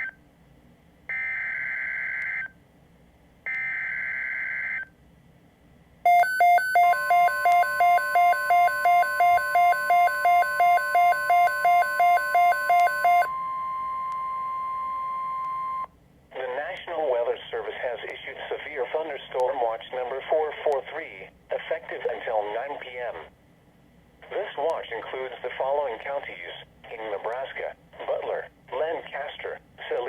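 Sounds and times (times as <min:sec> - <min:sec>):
harsh pulsing beep: 0:06.1 - 0:15.9
steady warning alarm tone: 0:06.1 - 0:15.9.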